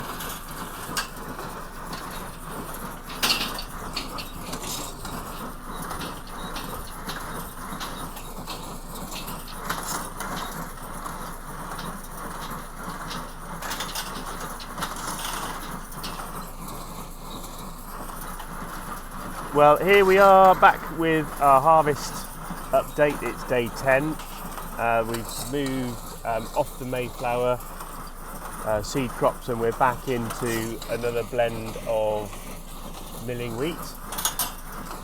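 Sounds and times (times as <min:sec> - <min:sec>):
harvest machinery running: 0:00.0 - 0:35.0.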